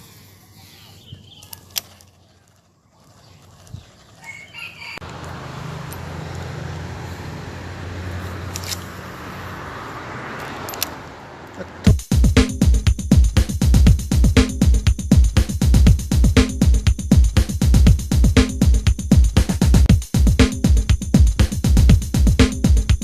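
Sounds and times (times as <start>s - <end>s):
rooster crowing: 4.2s - 7.9s.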